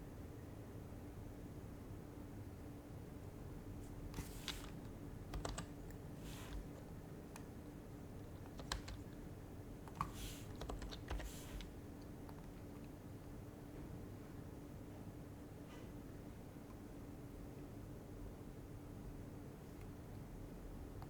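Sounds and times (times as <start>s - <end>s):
soft muffled keystrokes: 4.2s - 7.5s, 8.3s - 9.1s, 9.9s - 12.9s.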